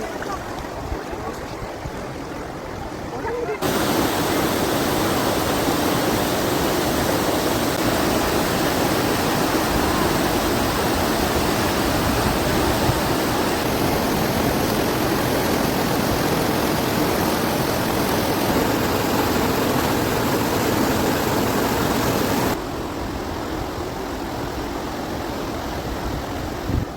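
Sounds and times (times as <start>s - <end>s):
waterfall rushing: 3.5s - 22.7s.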